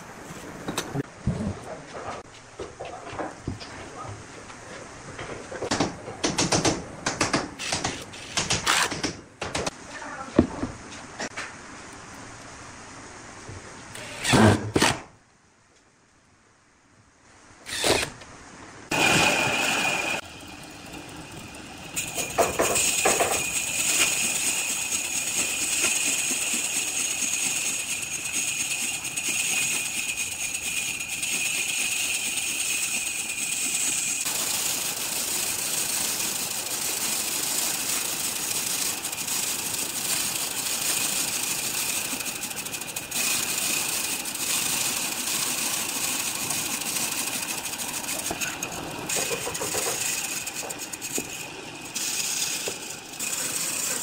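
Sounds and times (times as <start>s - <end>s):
power tool whining and cutting: 18.9s - 54.0s.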